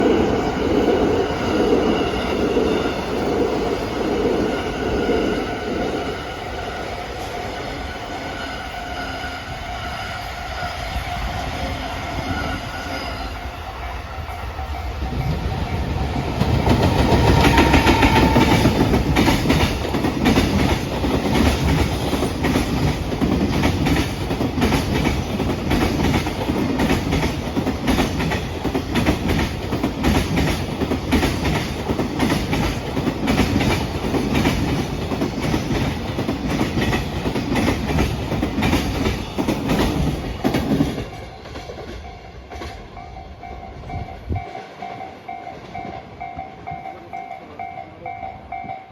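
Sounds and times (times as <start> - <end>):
freight train rumbling past: 0.0 - 48.9
level crossing warning bell: 41.0 - 48.9.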